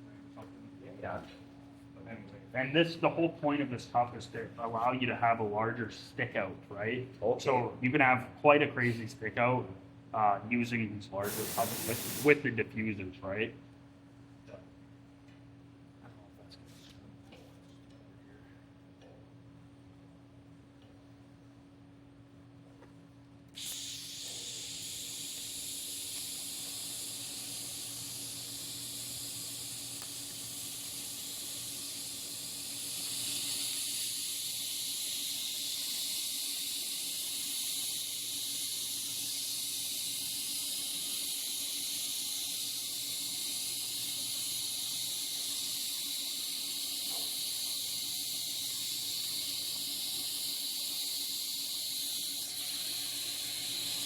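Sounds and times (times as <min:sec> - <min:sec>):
welding arc hissing: 0:11.2 - 0:12.5, 0:23.6 - 0:54.0.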